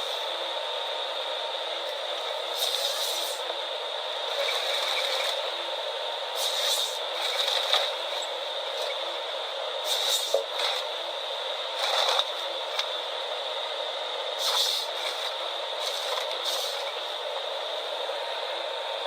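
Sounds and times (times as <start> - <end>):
heavy machine working: 1.7 - 13.4
hissing scraping bursts: 2.6 - 3.4, 6.4 - 7.8, 9.8 - 10.8, 14.4 - 16.9.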